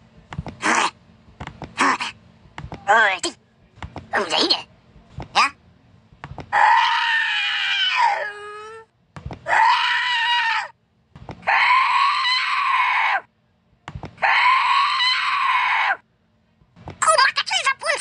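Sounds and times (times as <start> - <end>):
woman screaming: 6.5 - 8.8.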